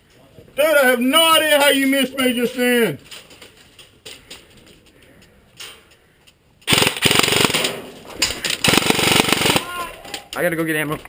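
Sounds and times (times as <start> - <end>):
airsoft rifle firing full auto: 6.7 - 7.8, 8.5 - 9.8.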